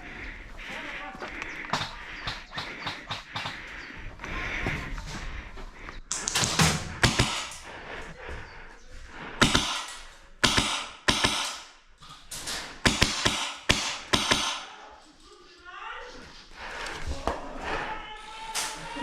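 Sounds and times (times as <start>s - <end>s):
airsoft gun shots: 6.2s - 7.5s, 9.4s - 11.7s, 12.8s - 14.7s.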